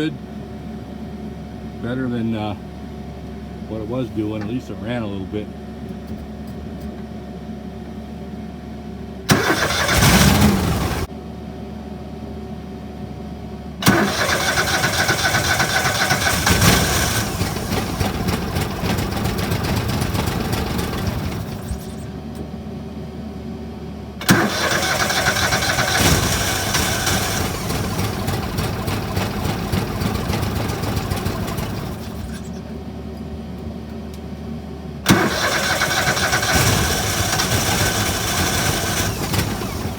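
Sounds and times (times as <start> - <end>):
engine running unevenly: 9.2 - 11.1, 13.7 - 39.9
engine cranking: 9.3 - 11.1, 13.8 - 22.2, 24.2 - 32.7, 35.0 - 39.9.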